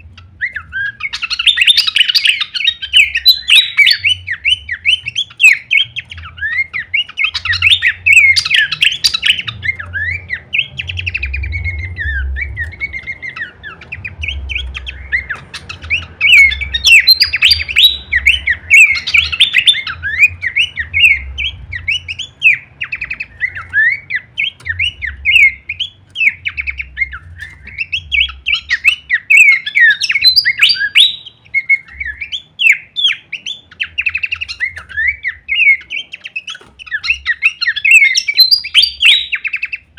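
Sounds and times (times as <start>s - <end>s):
faint low rumble: 0.0s - 36.0s
bird singing chattering song: 0.0s - 39.9s.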